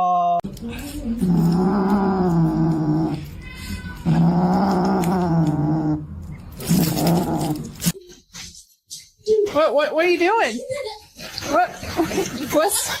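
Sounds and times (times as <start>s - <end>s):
pet animal yowling: 1.2s - 6.0s.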